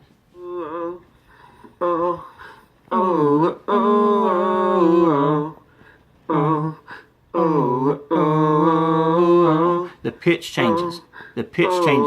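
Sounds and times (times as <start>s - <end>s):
man singing wordless melody: 1.8s - 12.0s.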